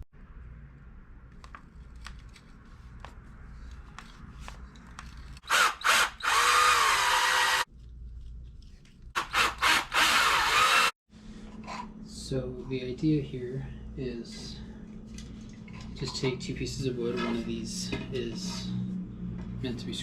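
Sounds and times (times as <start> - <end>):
power drill running: 5.4 - 7.7, 9.2 - 11.0.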